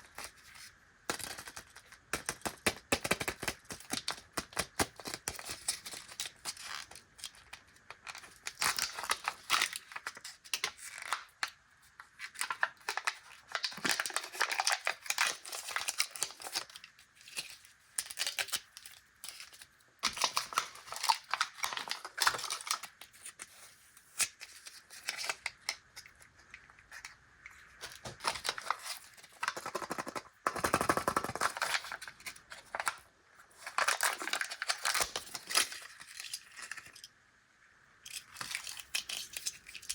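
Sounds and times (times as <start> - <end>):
plastic candy wrappers crinkling: 0.0 - 37.1.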